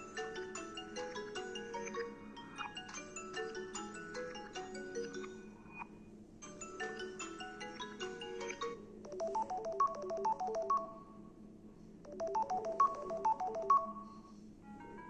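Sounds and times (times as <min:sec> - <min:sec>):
ringtone: 0:00.0 - 0:11.1, 0:12.1 - 0:14.2.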